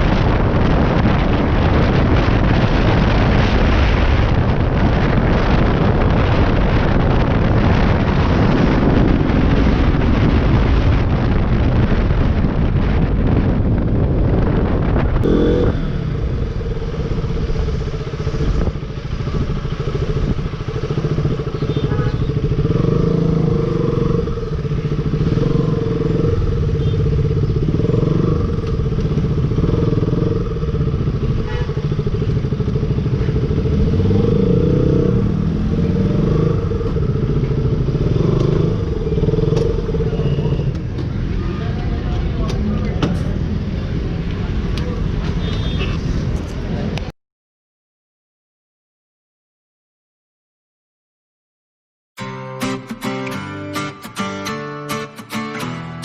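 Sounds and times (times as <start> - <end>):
dense rushing noise: 0.0 - 21.6
motorcycle engine drone: 0.0 - 47.1.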